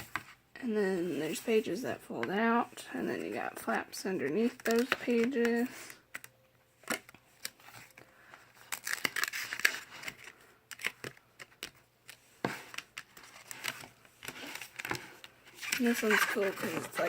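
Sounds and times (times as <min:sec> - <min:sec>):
paper pages rustling: 0:06.9 - 0:17.0.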